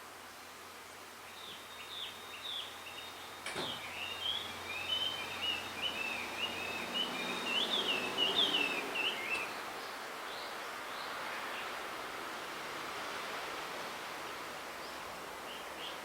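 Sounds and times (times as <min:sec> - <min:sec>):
background hiss: 0:00.0 - 0:16.0
bird warbling song: 0:01.3 - 0:09.7.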